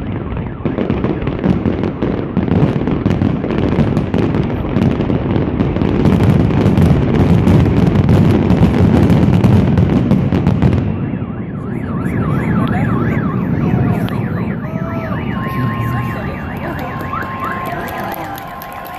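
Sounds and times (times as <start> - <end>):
firework bangs and crackle: 0.0 - 18.9
steady car alarm tone: 10.4 - 18.9
car alarm warbling: 10.8 - 18.9.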